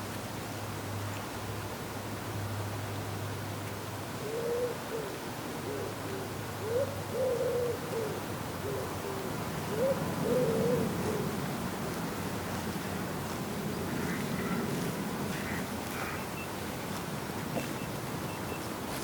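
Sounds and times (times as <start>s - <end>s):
pigeon cooing: 4.3s - 11.4s.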